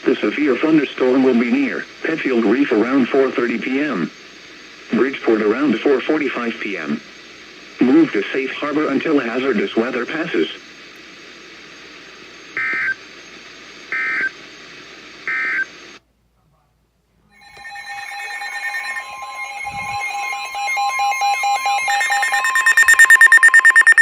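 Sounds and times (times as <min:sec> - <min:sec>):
electronic warning alarm pulsing: 0:12.5 - 0:13.0, 0:15.2 - 0:15.7, 0:17.3 - 0:24.0
digital data tones: 0:17.3 - 0:24.0.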